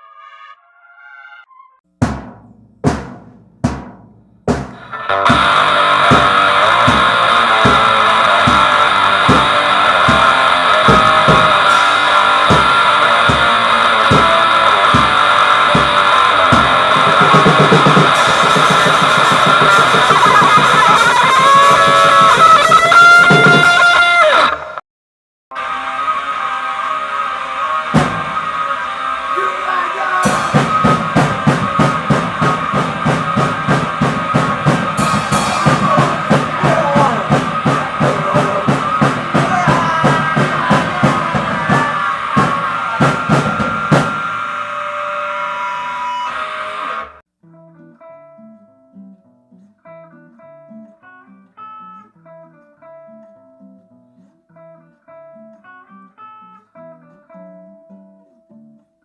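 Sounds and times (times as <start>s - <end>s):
fast dense drumming: 2.0s - 23.9s, 28.0s - 28.6s, 30.2s - 44.6s
noisy guitar wall: 2.4s - 24.8s, 25.5s - 59.0s
picked acoustic guitar: 4.8s - 23.6s, 47.4s - 59.0s.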